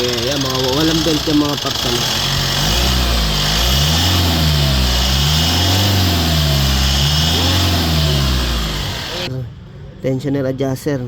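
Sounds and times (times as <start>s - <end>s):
car engine running with wavering tone: 0.0s - 9.3s.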